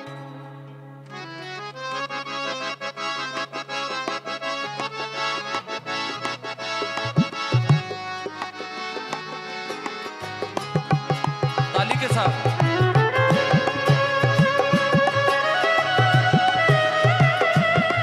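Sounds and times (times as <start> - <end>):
drum strokes: 9.2 - 18.0.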